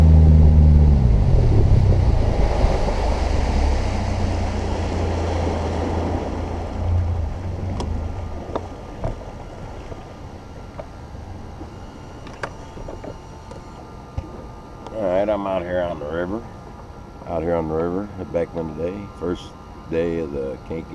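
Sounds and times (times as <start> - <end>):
water rushing against hull: 0.0 - 11.0
boat motor throttling back: 0.0 - 16.8.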